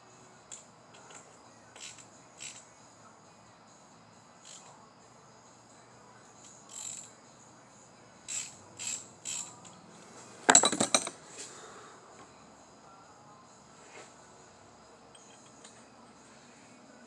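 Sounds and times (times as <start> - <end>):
hand ratchet clicking: 0.5 - 2.6, 4.4 - 4.7, 6.4 - 7.1, 8.3 - 9.8.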